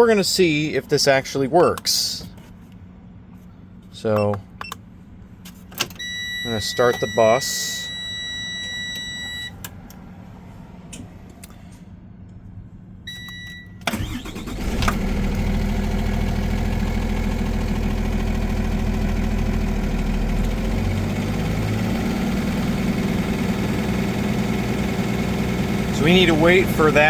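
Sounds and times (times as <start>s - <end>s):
dashboard warning tone: 6.0s - 9.7s, 13.1s - 14.2s, 18.4s - 27.0s
diesel engine starting and idling: 13.1s - 27.0s.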